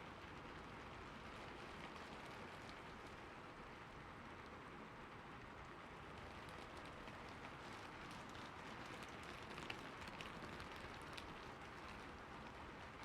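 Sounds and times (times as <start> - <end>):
raindrops ticking on a surface: 0.2 - 13.0.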